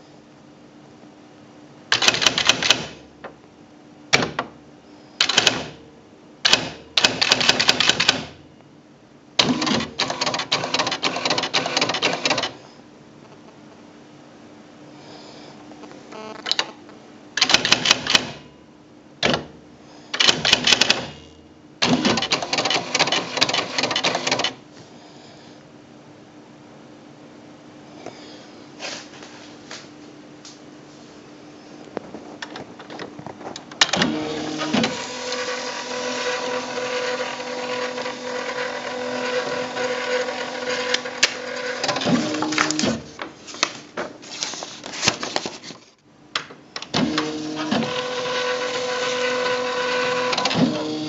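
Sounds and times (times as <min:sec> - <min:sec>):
typewriter daisy-wheel strikes: 0:01.9 - 0:03.0, 0:06.5 - 0:08.4, 0:20.2 - 0:21.2.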